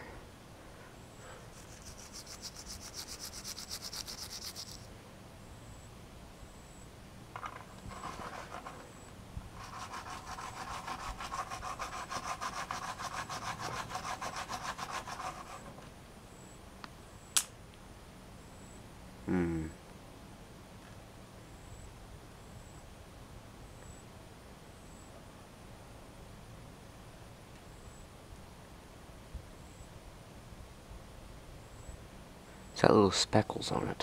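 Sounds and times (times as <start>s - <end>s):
sharp click: 17.3s - 17.6s.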